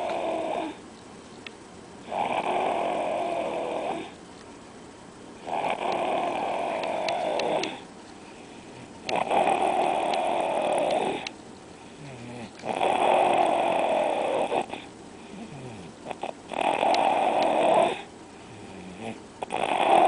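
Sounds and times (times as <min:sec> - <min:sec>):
loud snoring: 0:00.0 - 0:00.8, 0:02.0 - 0:04.2, 0:05.4 - 0:07.8, 0:08.8 - 0:11.3, 0:12.0 - 0:20.0
quiet breathing: 0:05.8 - 0:09.1, 0:09.7 - 0:12.7, 0:14.2 - 0:16.0, 0:17.8 - 0:19.2.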